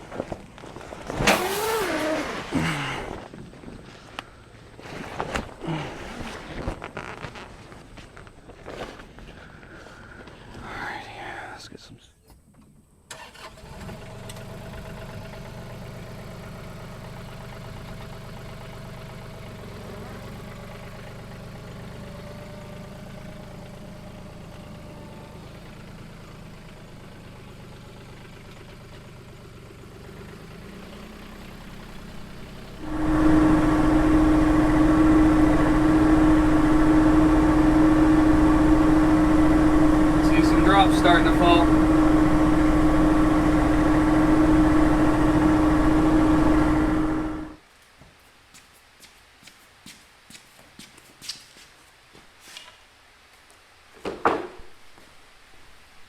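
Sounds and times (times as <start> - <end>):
engine idling and revving: 0.0 - 3.3, 13.1 - 47.6.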